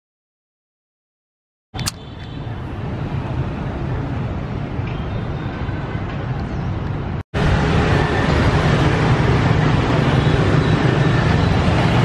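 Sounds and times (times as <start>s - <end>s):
motorbike and car engines: 6.1s - 12.0s.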